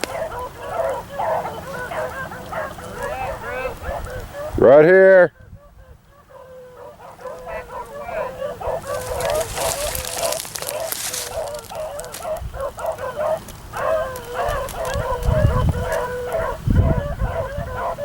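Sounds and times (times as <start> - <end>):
hounds baying: 0.0 - 18.0.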